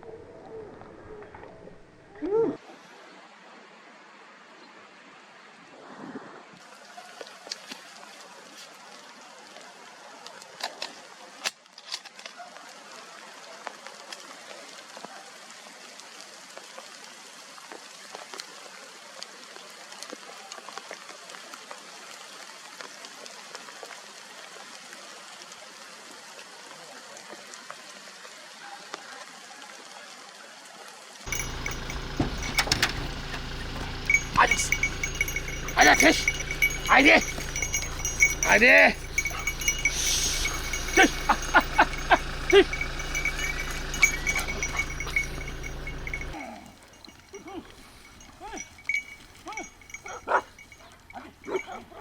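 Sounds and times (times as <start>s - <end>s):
running water: 31.3s - 52.0s.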